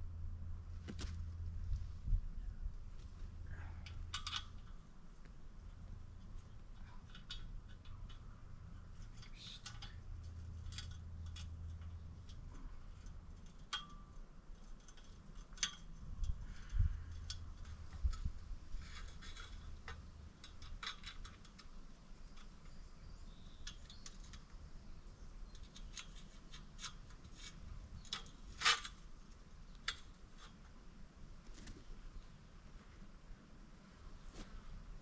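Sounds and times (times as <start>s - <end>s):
faint low hum: 0.0s - 35.0s
small metallic clicks and clinks: 3.6s - 24.7s, 25.4s - 29.1s.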